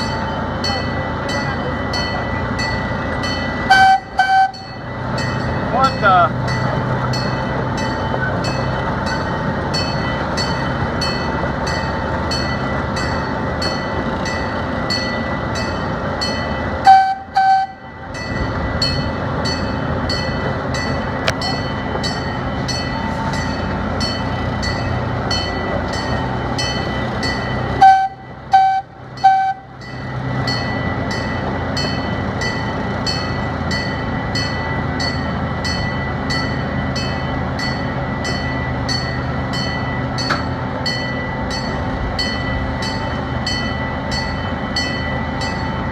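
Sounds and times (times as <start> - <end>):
train clicking on rails: 0.0 - 45.9
train horn toots: 3.6 - 4.8, 16.8 - 17.9, 27.8 - 29.8.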